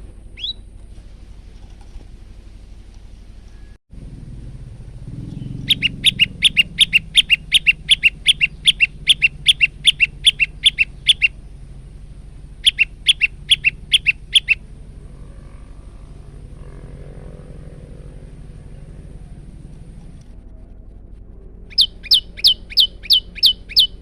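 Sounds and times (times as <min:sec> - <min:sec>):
bird chirping rapidly: 0:00.3 - 0:00.7, 0:05.1 - 0:14.7, 0:21.7 - 0:24.0.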